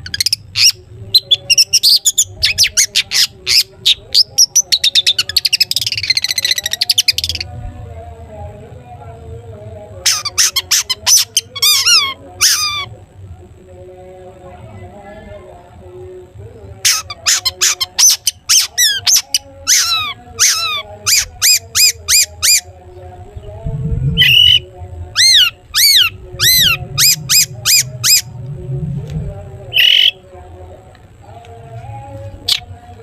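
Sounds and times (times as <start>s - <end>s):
harsh bird squawk: 16.9s - 22.6s, 24.2s - 24.6s, 25.2s - 28.3s, 29.7s - 30.2s
bird singing whistled notes: 24.2s - 28.3s.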